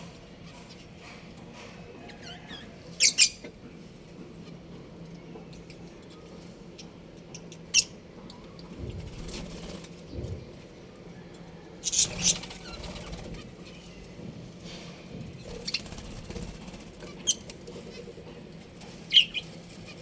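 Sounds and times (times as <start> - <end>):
budgerigars chirping: 2.1 - 3.5, 19.1 - 19.5.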